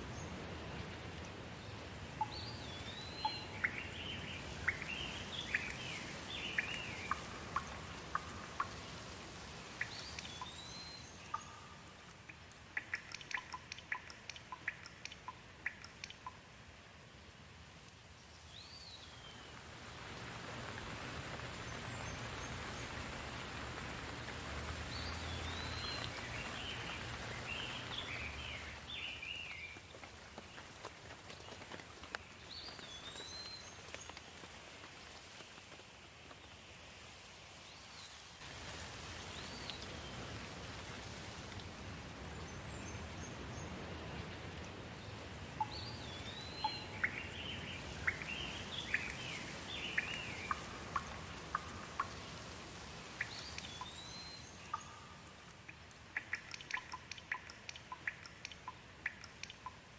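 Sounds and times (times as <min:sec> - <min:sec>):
steady rain falling: 0:00.0 - 0:59.9
birds chirping: 0:02.2 - 0:09.1, 0:09.7 - 0:16.4, 0:24.9 - 0:29.8, 0:42.4 - 0:59.8.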